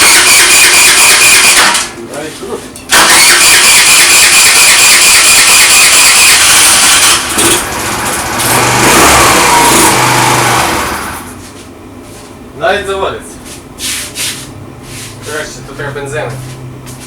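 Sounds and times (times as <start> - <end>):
electric starter cranking engine: 0.0 - 2.0, 2.9 - 11.4
scooter engine running: 6.2 - 11.4.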